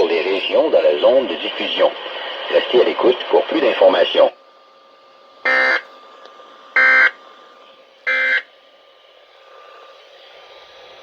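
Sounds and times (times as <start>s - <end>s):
faint radio hiss: 0.0s - 11.0s
thin steady hum: 0.2s - 11.0s
warbling data tone bursts: 5.5s - 5.8s.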